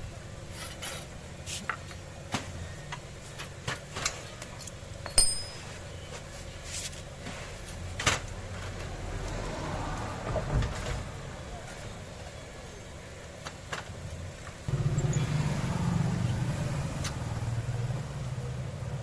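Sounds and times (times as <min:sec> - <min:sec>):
clicks and taps of metal parts: 0:04.4 - 0:05.6
ringing metal clink: 0:05.0 - 0:05.8.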